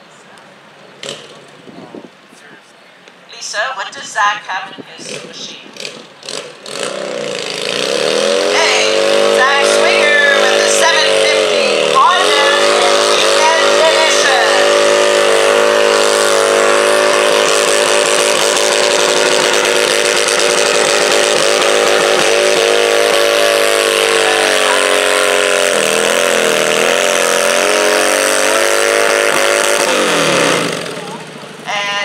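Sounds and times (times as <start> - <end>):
tractor engine running at high revs: 1.0 - 1.6, 5.0 - 31.7.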